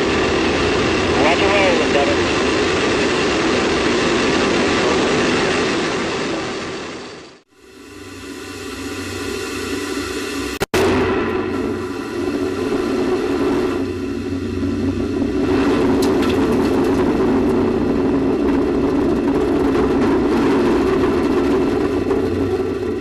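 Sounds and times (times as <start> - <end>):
rocket motors roaring: 0.0 - 23.0.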